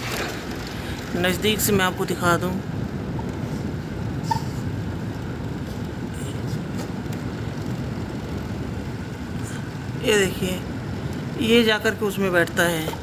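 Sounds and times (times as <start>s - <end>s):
air conditioner cover rattling buzz: 0.0s - 0.8s.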